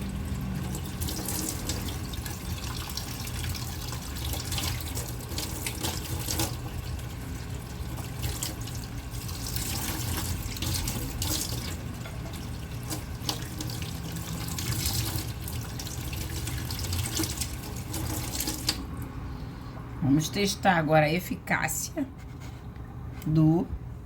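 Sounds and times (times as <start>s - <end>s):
tap water running into sink: 0.0s - 19.1s.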